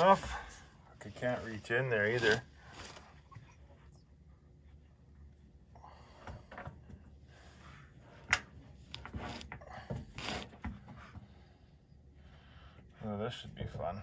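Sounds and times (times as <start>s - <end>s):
tools scraping and rustling: 1.1s - 3.4s.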